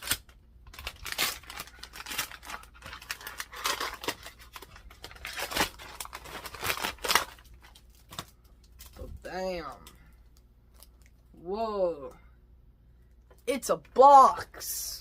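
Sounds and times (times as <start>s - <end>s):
packaging tearing and crinkling: 0.0s - 9.2s.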